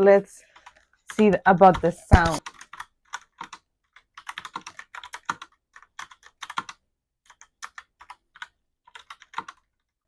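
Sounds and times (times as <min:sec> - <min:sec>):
mechanical keyboard keys clicking: 0:01.7 - 0:09.6.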